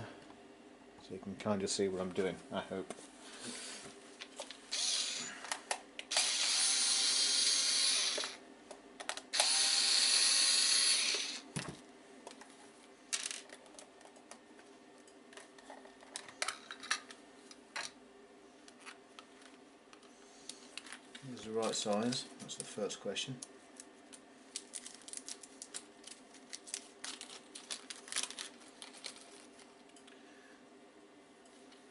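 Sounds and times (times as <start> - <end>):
electric screwdriver running: 4.7 - 5.4, 6.1 - 8.4, 9.3 - 11.4.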